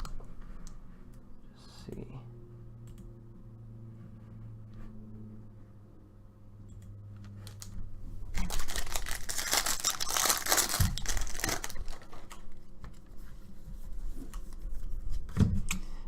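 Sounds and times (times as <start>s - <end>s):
wrapper tearing and crinkling: 8.3s - 12.6s.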